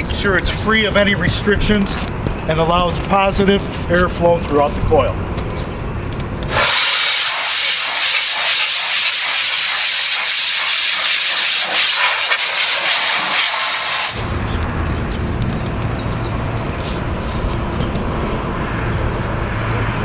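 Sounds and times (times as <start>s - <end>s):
air blowgun hissing: 6.5s - 14.3s.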